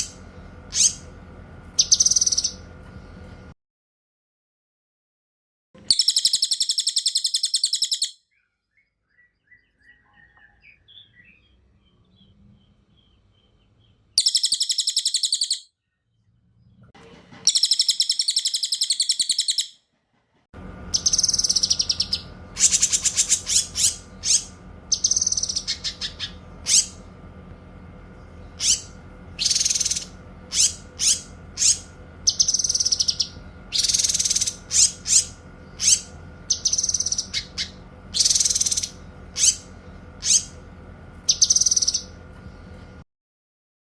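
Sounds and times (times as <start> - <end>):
songbird trills: 0.0 - 1.1, 1.8 - 2.7, 5.8 - 16.8, 17.5 - 19.7, 21.0 - 27.0, 28.2 - 40.6, 41.3 - 42.1
faint bird chirps: 5.9 - 16.8, 28.2 - 40.5
low hum: 20.1 - 43.0.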